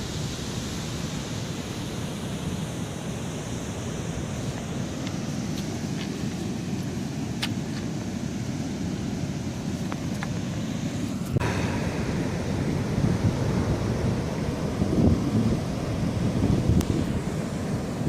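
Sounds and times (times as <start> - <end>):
sea surf: 0.0 - 18.0
wind buffeting microphone: 11.3 - 18.0.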